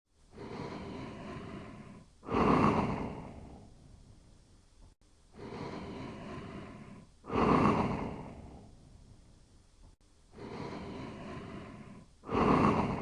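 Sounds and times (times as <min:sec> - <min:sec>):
person snoring: 0:00.3 - 0:04.0, 0:05.4 - 0:09.2, 0:10.3 - 0:13.0.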